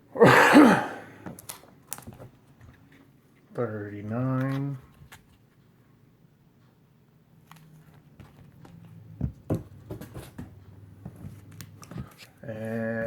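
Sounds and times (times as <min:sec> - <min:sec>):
comic books rustling and tapping: 0:01.2 - 0:05.6, 0:07.4 - 0:12.8.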